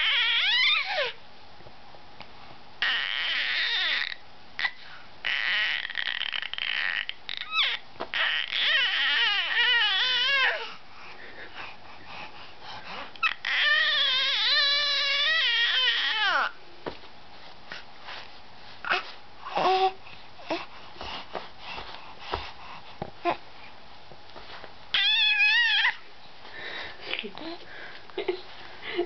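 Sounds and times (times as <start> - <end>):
baby squealing cry: 0.0 - 1.2, 2.8 - 10.6, 13.2 - 16.5, 24.9 - 26.0.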